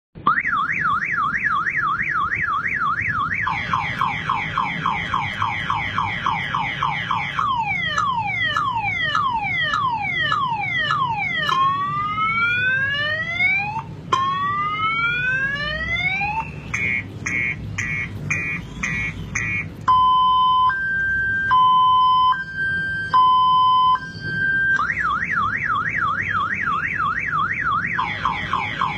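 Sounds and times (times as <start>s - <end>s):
car alarm siren: 0.2s - 28.9s.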